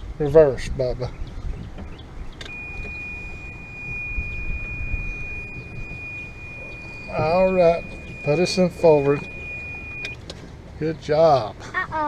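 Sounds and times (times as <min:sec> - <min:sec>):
golf cart rumble: 0:00.0 - 0:12.0
reverse warning buzzer: 0:02.5 - 0:10.1.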